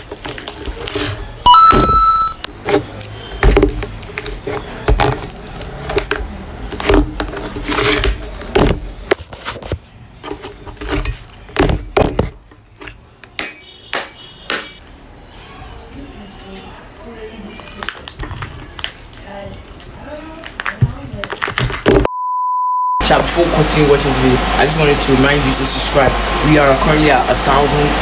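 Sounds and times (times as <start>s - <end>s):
short electronic beep: 1.5s - 2.4s, 22.1s - 23.0s
machete hacking plastic: 10.8s - 14.8s.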